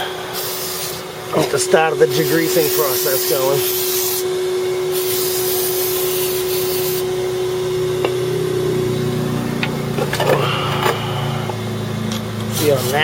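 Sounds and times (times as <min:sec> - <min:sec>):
vacuum cleaner running: 0:00.0 - 0:13.0
aerosol can hissing: 0:00.3 - 0:01.1, 0:02.1 - 0:04.2, 0:04.9 - 0:07.0, 0:12.4 - 0:13.0.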